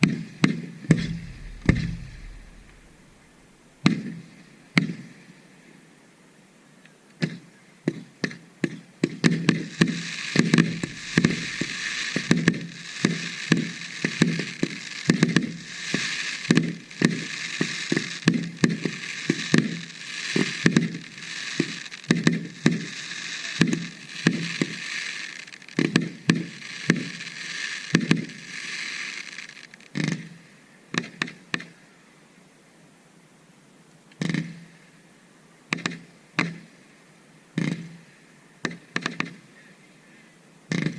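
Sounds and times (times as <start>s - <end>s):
fireworks bursting: 0.0s - 4.2s, 9.1s - 30.4s, 34.2s - 34.6s, 37.6s - 38.0s
steady high hiss: 0.0s - 7.8s, 9.2s - 40.9s.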